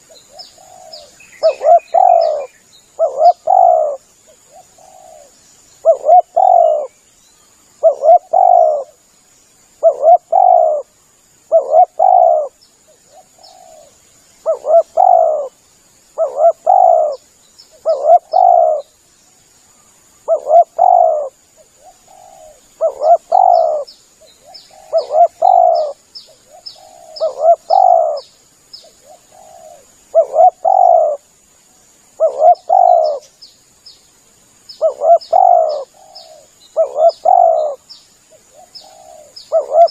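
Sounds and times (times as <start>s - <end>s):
dove cooing: 0.0s - 6.9s, 7.8s - 9.0s, 9.8s - 10.9s, 11.5s - 15.6s, 16.2s - 17.2s, 17.8s - 18.9s, 20.2s - 28.2s, 29.0s - 31.2s, 32.2s - 33.3s, 34.8s - 37.8s, 38.4s - 39.9s.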